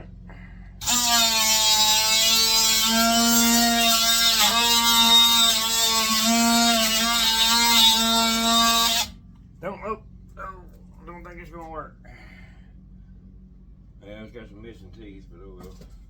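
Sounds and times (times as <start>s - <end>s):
oscillating multi-tool buzzing: 0.8s - 9.2s.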